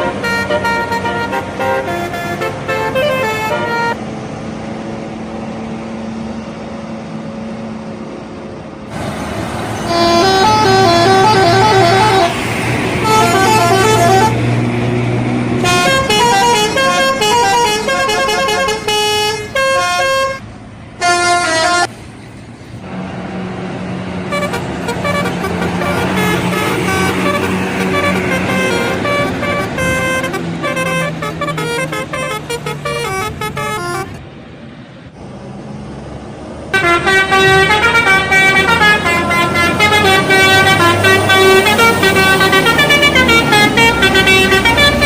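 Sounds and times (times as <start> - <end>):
bus horns playing tunes: 0.0 - 4.0, 9.0 - 22.0, 24.2 - 34.2, 36.7 - 45.0
bus engine: 0.0 - 45.0.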